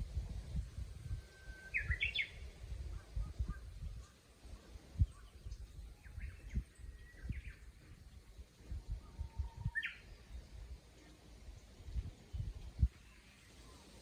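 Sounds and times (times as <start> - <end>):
bush warblers singing: 1.6 - 8.0.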